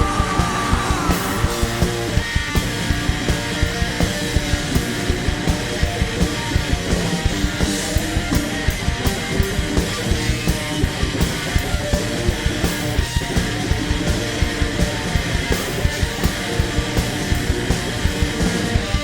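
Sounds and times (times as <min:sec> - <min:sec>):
rock band playing punk rock: 0:00.0 - 0:19.0.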